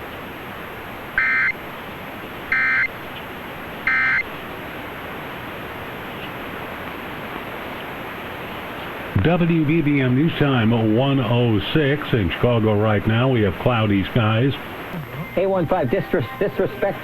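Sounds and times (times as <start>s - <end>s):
radio static hiss: 0.0s - 17.0s
data tone bursts: 1.2s - 1.6s, 2.5s - 2.9s, 3.9s - 4.2s.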